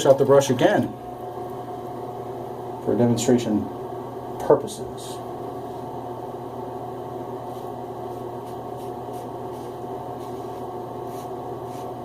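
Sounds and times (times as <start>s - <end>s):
steady background hum: 0.0s - 12.0s
razor scraping on scalp: 7.5s - 12.0s.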